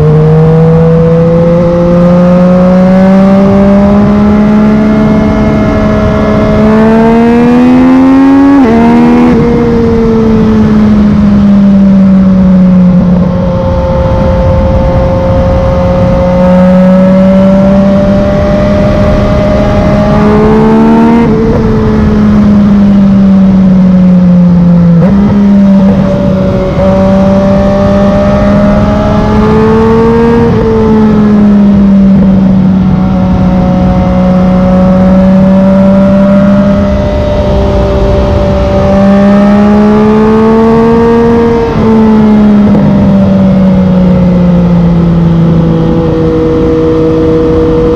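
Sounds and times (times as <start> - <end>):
gear change pitch drops: 0.0 - 47.9
motorcycle engine revving: 0.0 - 47.9.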